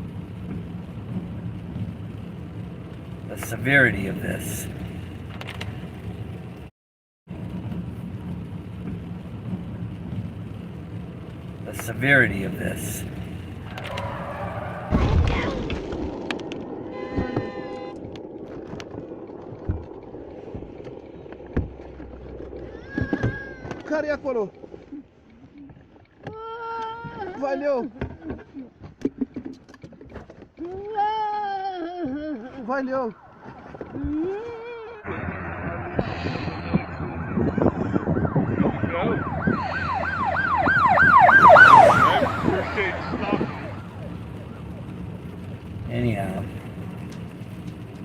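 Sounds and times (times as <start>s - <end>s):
car road and engine rumble: 0.0s - 6.7s, 7.3s - 27.3s, 32.0s - 48.0s
emergency siren yelping: 35.1s - 44.8s.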